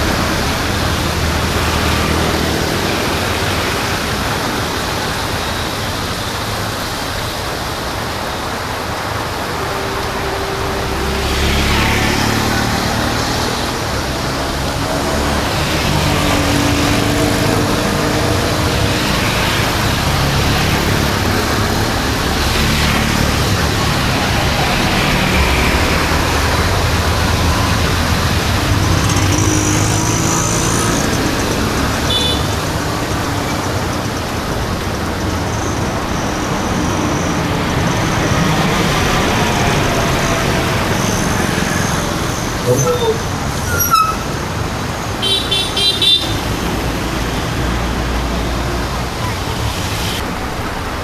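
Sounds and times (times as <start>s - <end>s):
road traffic passing: 0.0s - 51.0s.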